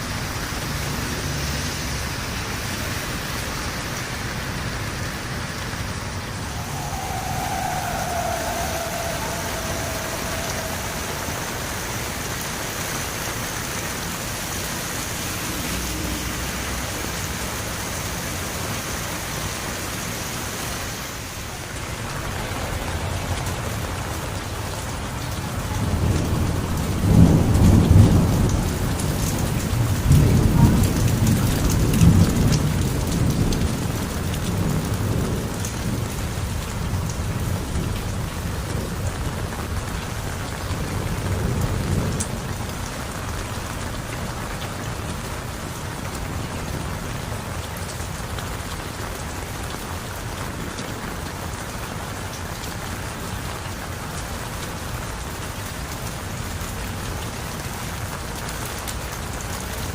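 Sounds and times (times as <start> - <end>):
heavy rain: 0.0 - 59.9
thunder rumbling: 5.6 - 17.5, 21.5 - 49.4
brief falling tone: 6.2 - 12.8.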